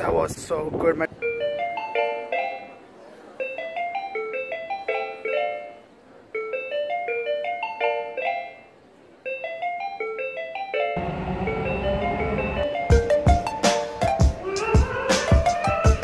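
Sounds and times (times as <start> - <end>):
bright music of quick notes: 9.3 - 14.4.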